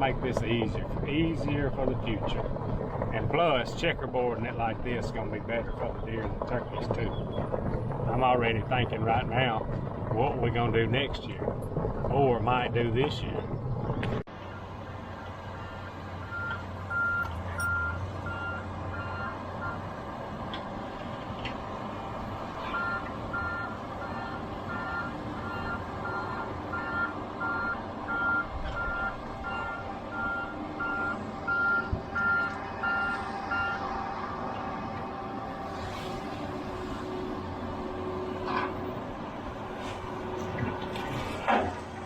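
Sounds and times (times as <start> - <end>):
diesel engine running: 0.0 - 42.0
backup alarm beeping: 15.6 - 19.8, 22.6 - 33.8.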